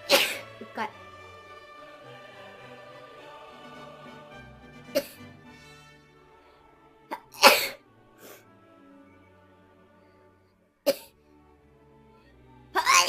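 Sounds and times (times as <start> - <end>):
person sneezing loudly: 0.0 - 0.5, 7.1 - 7.8, 12.8 - 13.0
background music with sustained tones: 0.0 - 13.0.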